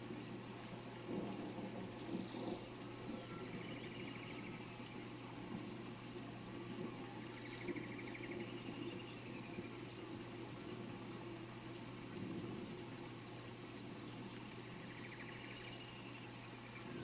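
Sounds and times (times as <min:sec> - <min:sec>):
steady rain falling: 0:00.0 - 0:17.0
small birds trilling and chirping: 0:01.9 - 0:06.3, 0:06.9 - 0:10.5, 0:12.9 - 0:17.0.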